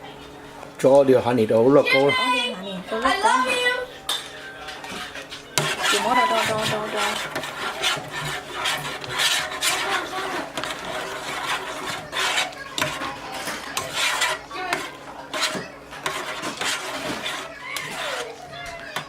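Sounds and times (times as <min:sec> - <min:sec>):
rasping scraping strokes: 0:04.8 - 0:18.5.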